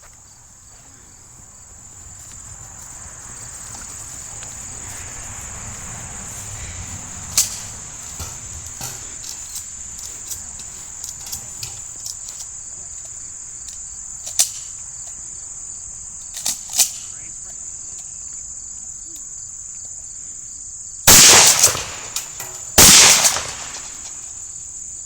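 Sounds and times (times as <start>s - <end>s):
insect chorus: 0.0s - 25.0s
shotgun shots: 21.1s - 24.3s.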